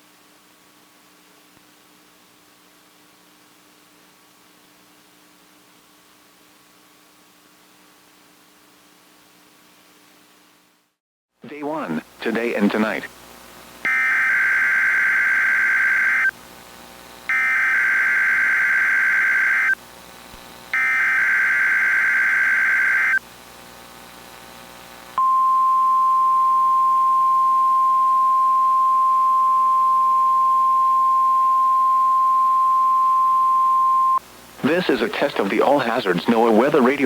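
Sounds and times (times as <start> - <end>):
buzzing digital data tones: 13.9 - 16.3, 17.3 - 19.8, 20.8 - 23.2
steady warning alarm tone: 13.9 - 16.3, 17.3 - 19.8, 20.8 - 23.2, 25.2 - 34.2.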